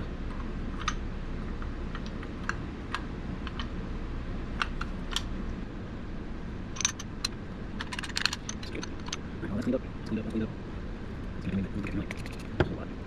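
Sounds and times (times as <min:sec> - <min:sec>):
low background hum: 0:00.0 - 0:13.0
small lock parts clicking: 0:06.8 - 0:09.2.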